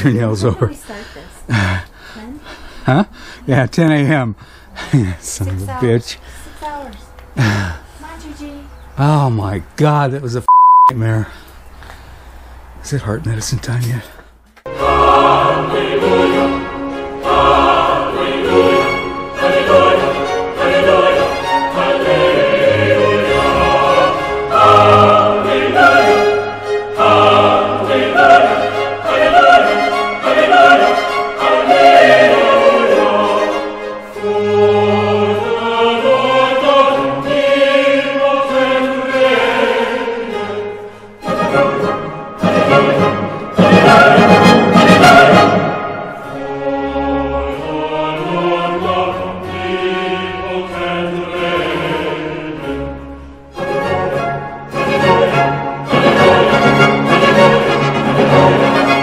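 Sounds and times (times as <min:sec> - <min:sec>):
operatic voice singing: 0:14.7 - 0:45.7, 0:46.3 - 0:53.0
orchestra playing: 0:14.7 - 0:59.0.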